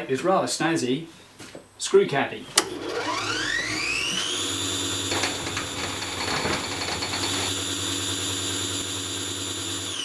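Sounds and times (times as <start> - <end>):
power tool motor whining: 2.6 - 10.0.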